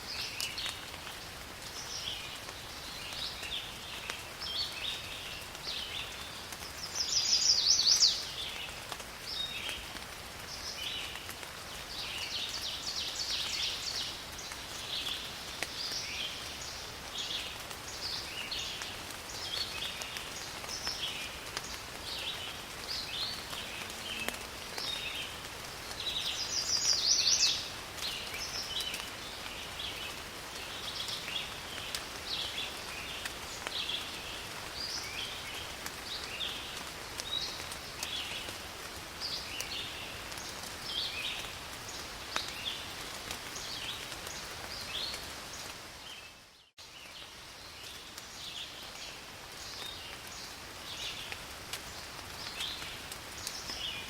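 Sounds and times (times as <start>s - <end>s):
rain hissing: 0.1s - 54.0s
birds chirping: 22.1s - 29.4s.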